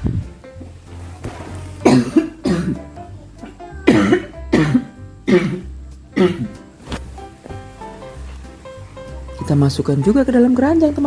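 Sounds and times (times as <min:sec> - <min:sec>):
background music: 0:00.0 - 0:11.0
short cough-like sounds: 0:03.9 - 0:05.6.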